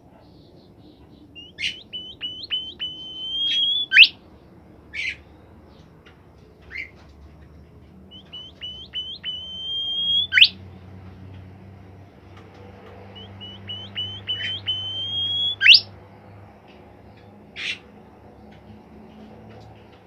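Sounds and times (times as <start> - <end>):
songbird whistling phrases: 1.4 - 4.2, 8.1 - 10.6, 13.1 - 15.9.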